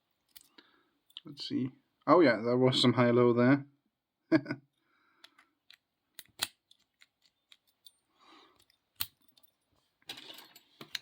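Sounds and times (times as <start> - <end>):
lock picks clicking: 5.2 - 9.6.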